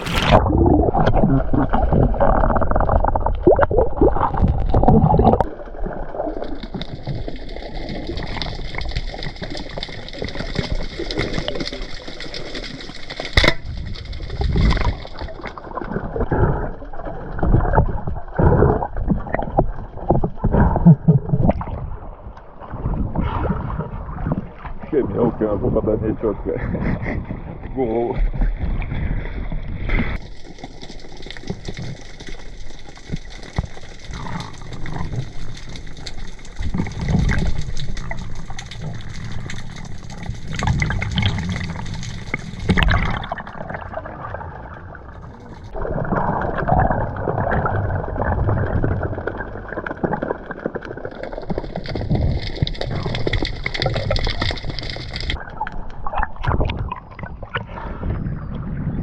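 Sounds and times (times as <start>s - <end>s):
water gurgling and sloshing: 0.0s - 59.0s.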